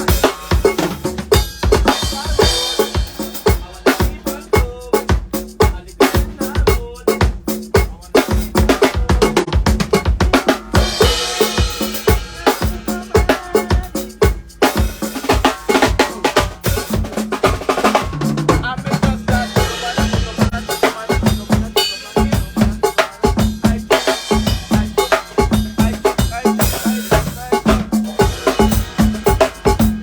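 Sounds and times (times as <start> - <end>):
drum-heavy music: 0.0 - 30.0.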